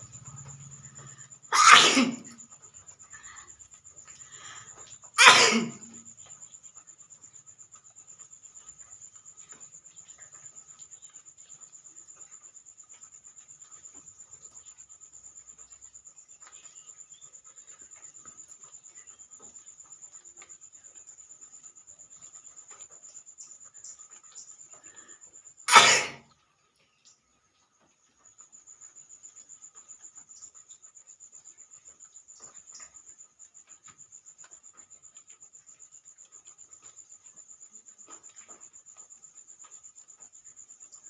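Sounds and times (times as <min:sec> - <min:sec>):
person sneezing: 0:01.5 - 0:02.4, 0:05.2 - 0:05.9, 0:25.7 - 0:26.2
faint ticks: 0:02.4 - 0:05.2, 0:05.8 - 0:25.6, 0:26.3 - 0:41.0.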